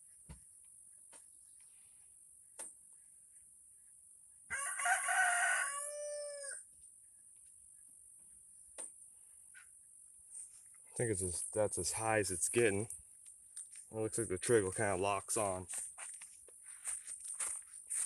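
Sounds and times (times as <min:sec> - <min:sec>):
rooster crowing: 0:04.5 - 0:06.7.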